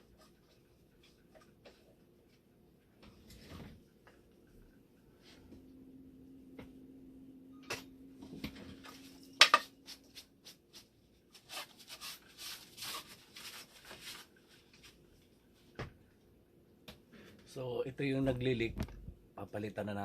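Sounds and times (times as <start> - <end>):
faint steady hum: 0.0 - 20.0
rubbing and rustling: 8.8 - 15.7.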